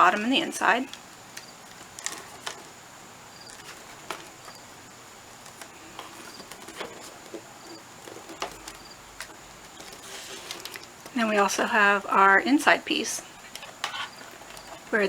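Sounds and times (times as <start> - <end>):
cardboard pieces tapping: 3.4 - 4.6, 5.4 - 11.3.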